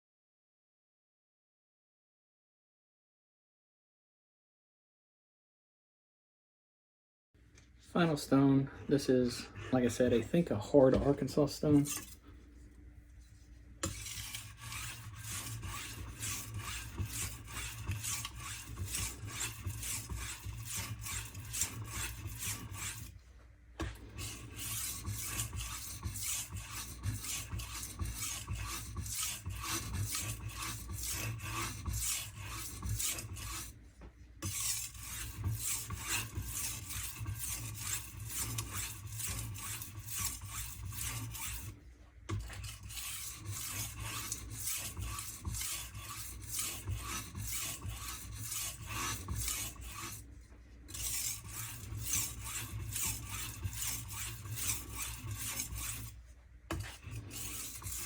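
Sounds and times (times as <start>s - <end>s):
knife scraping on sharpening stone: 11.7s - 12.2s, 13.8s - 23.1s, 24.2s - 33.7s, 34.4s - 41.7s, 42.3s - 50.2s, 50.9s - 58.0s.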